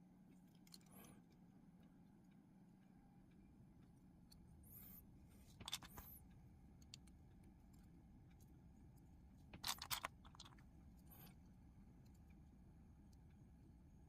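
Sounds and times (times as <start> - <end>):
plastic bricks clicking together: 9.6 - 10.6.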